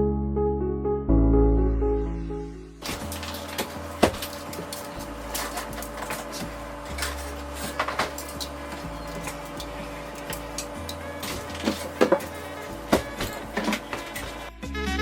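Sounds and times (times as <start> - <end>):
background music: 0.0 - 15.0
food containers and jars clattering: 2.8 - 14.5
steady hum: 2.8 - 14.6.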